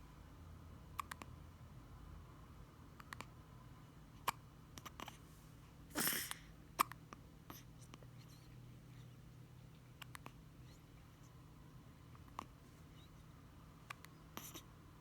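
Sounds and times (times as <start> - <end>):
baby hiccuping: 6.0 - 7.0.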